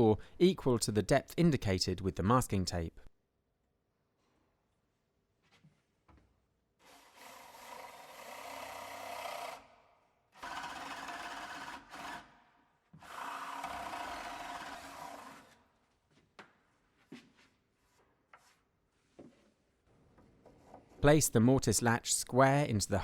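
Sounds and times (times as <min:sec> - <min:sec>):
drill boring into wood: 0:06.8 - 0:09.7, 0:10.4 - 0:12.3, 0:13.0 - 0:15.6.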